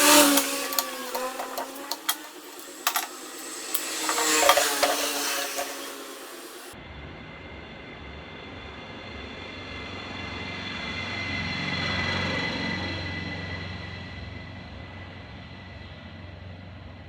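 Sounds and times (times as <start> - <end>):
vehicle engine whining: 0.0 - 6.8.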